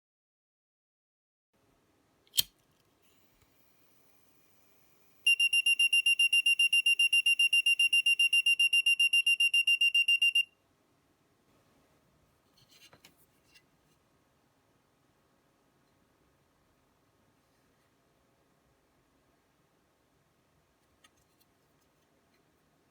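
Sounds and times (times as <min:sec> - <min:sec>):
sharp click: 0:02.3 - 0:02.5
high rapid buzzer beeping: 0:05.3 - 0:10.4.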